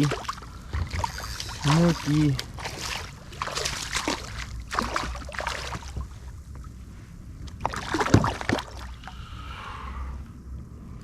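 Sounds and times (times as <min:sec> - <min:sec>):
fish splashing in water: 0:00.0 - 0:06.0
wind rumble on microphone: 0:00.0 - 0:11.0.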